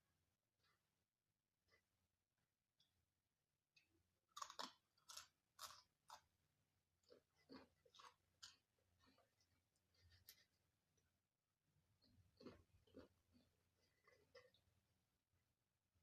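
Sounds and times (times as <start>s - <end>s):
chewing crunchy food: 3.8s - 11.1s, 12.0s - 14.8s.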